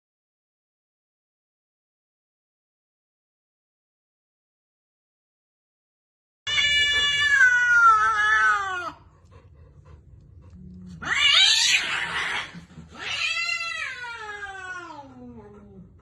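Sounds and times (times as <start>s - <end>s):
cat yowling: 6.5s - 9.1s, 10.9s - 15.8s.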